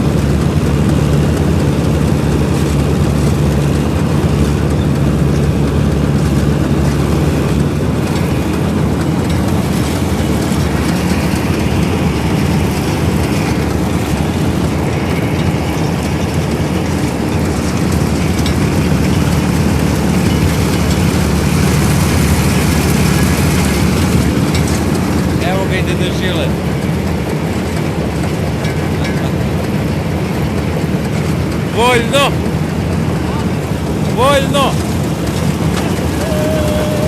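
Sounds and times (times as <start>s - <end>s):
combine harvester engine: 0.0s - 37.0s
machinery rushing noise: 0.0s - 37.0s.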